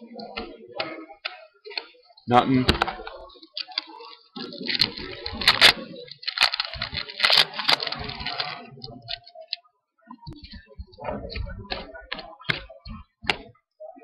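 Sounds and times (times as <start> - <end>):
trading cards rustling and snapping: 3.6 - 9.3.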